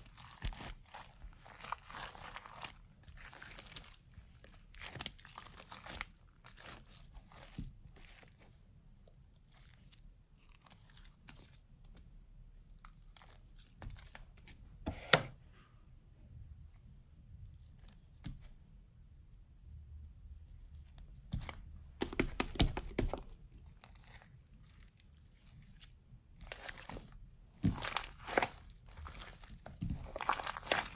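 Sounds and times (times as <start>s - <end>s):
slime squishing and tearing: 0.0s - 12.0s, 20.3s - 30.9s.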